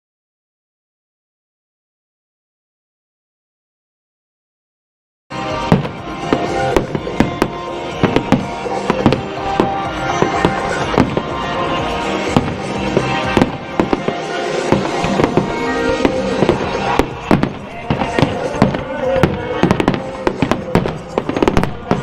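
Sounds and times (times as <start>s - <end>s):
fireworks bursting: 5.3s - 22.0s
music with sustained tones: 5.3s - 22.0s.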